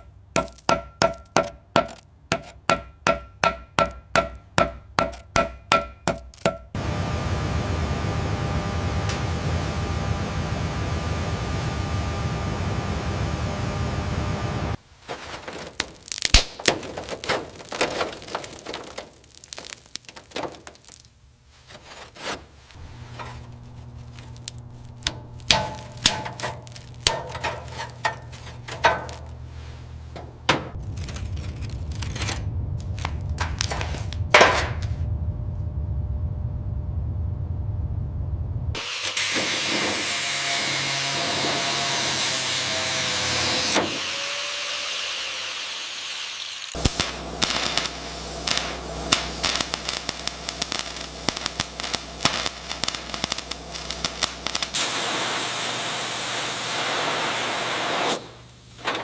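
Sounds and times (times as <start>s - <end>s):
clicks and scrapes: 15.1s - 29.5s, 30.1s - 34.9s
steady hiss: 45.4s - 58.8s.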